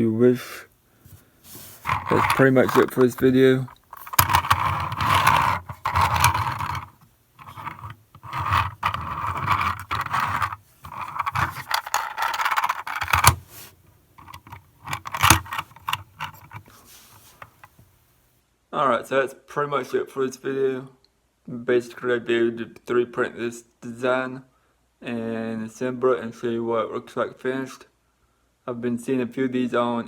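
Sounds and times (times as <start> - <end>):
hard objects scraping and clicking: 1.1 - 17.9.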